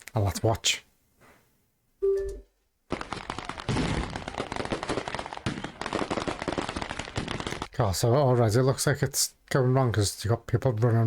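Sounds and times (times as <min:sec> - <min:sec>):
firework bangs and crackles: 0:02.9 - 0:07.7.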